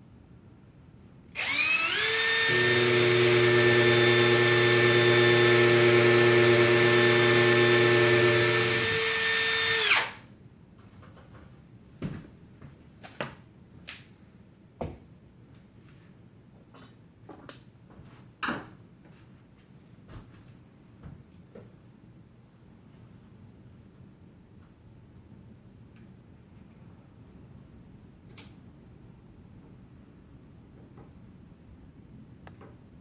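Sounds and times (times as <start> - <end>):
power drill boring into wood: 1.4 - 10.2.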